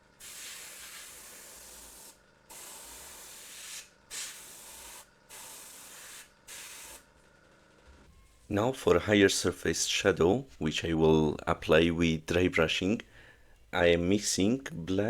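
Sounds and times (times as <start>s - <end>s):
spray paint hissing: 0.1s - 7.0s.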